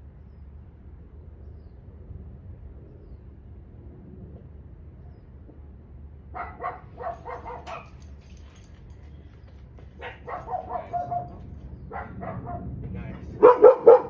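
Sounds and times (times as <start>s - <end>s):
dog barking: 6.4s - 8.1s, 10.0s - 12.7s, 13.4s - 14.0s.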